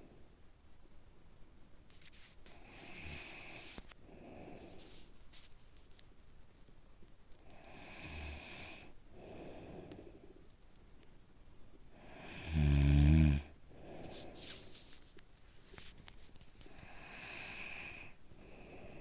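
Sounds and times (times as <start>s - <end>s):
person snoring: 12.1s - 13.5s
breathy exhale: 16.7s - 19.0s.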